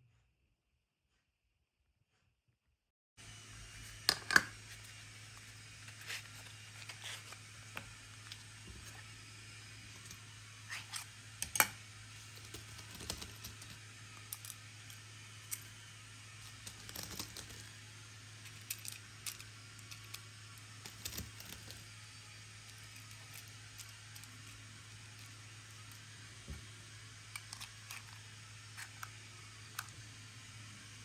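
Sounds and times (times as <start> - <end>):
steady low hum: 3.2 - 31.0
objects clicking and tapping: 4.0 - 4.6, 10.0 - 15.7, 16.4 - 17.7, 20.8 - 21.9.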